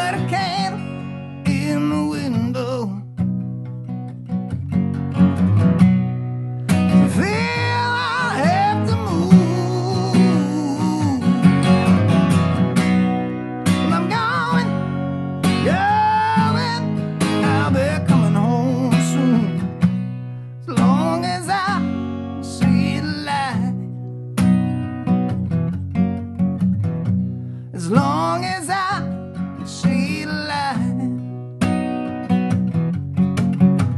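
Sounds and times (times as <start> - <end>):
person singing: 0.0 - 3.1, 7.1 - 11.4, 13.8 - 19.7, 20.7 - 23.9, 27.8 - 31.3
acoustic guitar strumming: 0.0 - 33.9.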